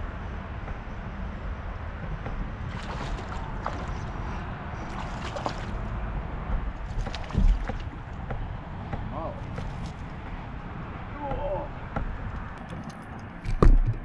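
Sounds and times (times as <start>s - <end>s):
wind rumbling on microphone: 0.0s - 14.0s
water sloshing against kayak: 2.6s - 10.5s
brief splashes: 2.7s - 6.0s, 6.8s - 8.0s, 9.4s - 10.2s.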